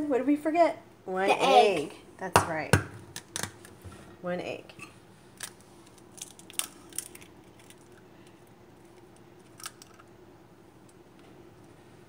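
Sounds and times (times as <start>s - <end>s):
faint steady hum: 0.0s - 12.0s
egg shell cracking: 5.3s - 8.1s, 8.9s - 10.2s.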